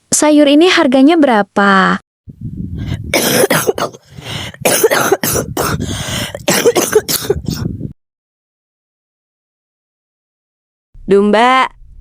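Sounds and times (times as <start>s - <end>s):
woman coughing: 3.1s - 5.8s, 6.4s - 7.7s.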